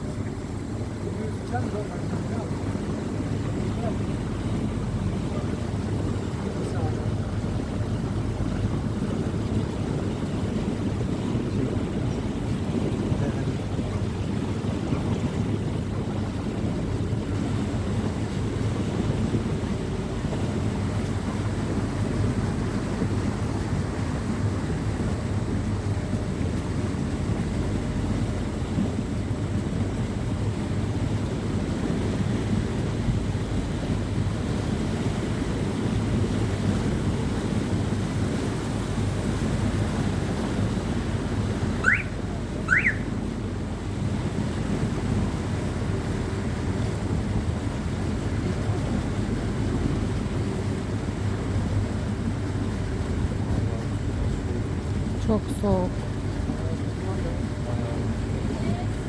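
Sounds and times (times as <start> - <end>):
boat engine humming: 0.0 - 59.0
water noise: 0.0 - 59.0
wind noise: 2.0 - 56.6.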